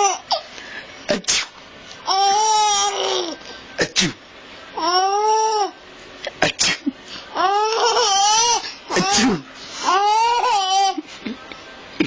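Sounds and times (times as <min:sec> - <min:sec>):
baby laughing: 0:00.0 - 0:00.5, 0:07.4 - 0:09.3, 0:09.9 - 0:11.1
person sneezing: 0:08.9 - 0:09.5.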